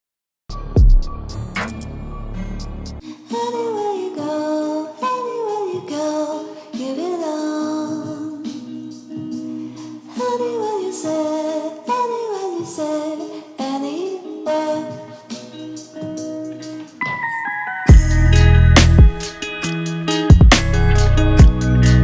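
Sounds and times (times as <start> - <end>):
heavy deep bass: 0.5 - 3.0, 17.9 - 19.3
person singing a song: 3.0 - 19.5.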